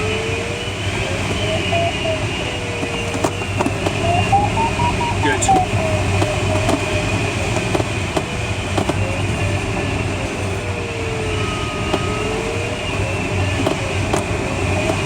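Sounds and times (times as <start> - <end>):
airflow rushing in cockpit: 0.1 - 8.7
thin tones sliding in pitch: 4.0 - 6.0.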